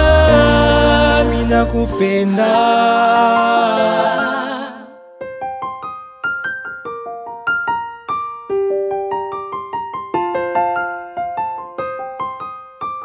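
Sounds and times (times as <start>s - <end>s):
full song mix: 0.0s - 5.1s
solo electric piano melody: 0.0s - 13.0s.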